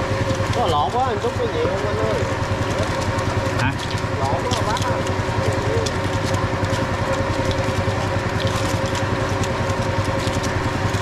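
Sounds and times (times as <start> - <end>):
small engine running: 0.0 - 11.0.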